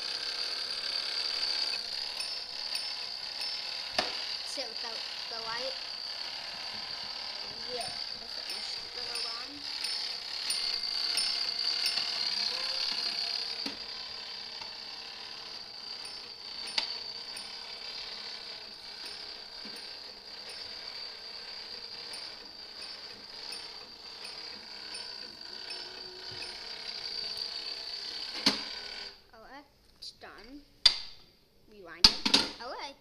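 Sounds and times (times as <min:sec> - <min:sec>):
alarm box mechanism ticking and whirring: 0:00.0 - 0:29.2
steady high-pitched tone: 0:07.4 - 0:14.3.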